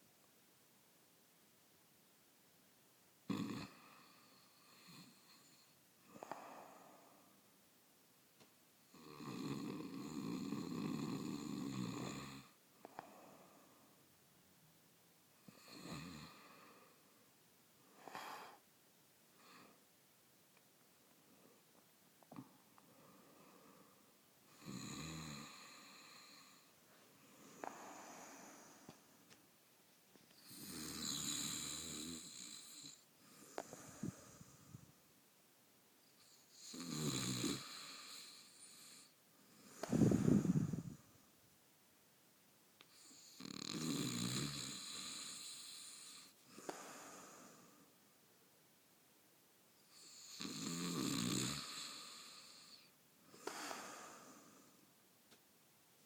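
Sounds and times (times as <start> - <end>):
man snoring: 3.3 - 6.9, 8.9 - 12.6, 15.4 - 16.9, 24.5 - 26.7, 27.5 - 28.9, 30.4 - 34.8, 36.2 - 41.0, 43.0 - 47.8, 49.9 - 54.7
airy breath: 26.6 - 29.1, 33.2 - 34.9, 39.6 - 41.1, 46.5 - 47.8, 52.7 - 54.8.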